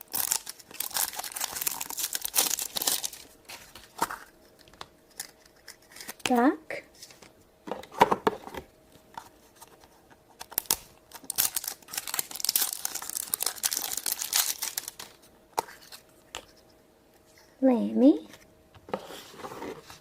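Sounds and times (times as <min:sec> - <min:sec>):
wrapper tearing and crinkling: 0:00.0 - 0:03.3, 0:10.4 - 0:15.2.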